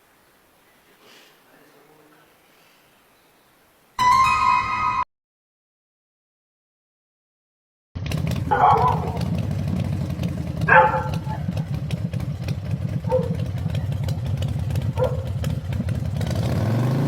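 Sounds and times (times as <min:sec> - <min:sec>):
motor idling rumble: 0:08.0 - 0:16.2.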